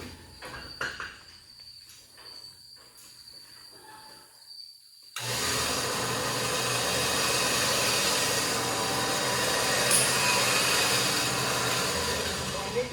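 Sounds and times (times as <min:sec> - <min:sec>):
electric winch whirring: 0:05.2 - 0:12.9.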